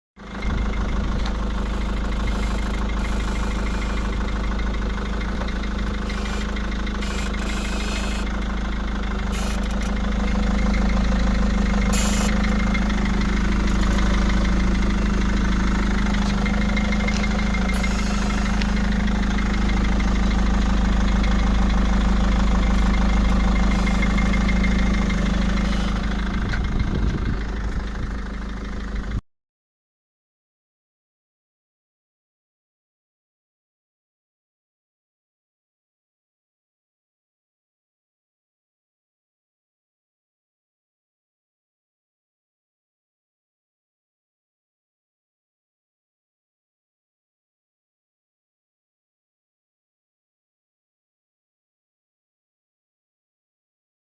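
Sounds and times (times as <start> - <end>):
car engine hum: 0.2 - 29.2.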